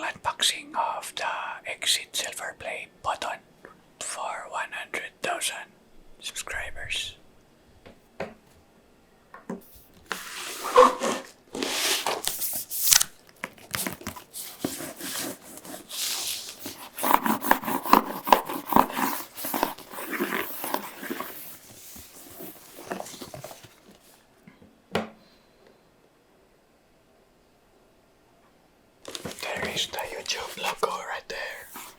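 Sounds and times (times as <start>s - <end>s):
cardboard tearing and rustling: 9.7s - 24.2s, 29.1s - 31.9s.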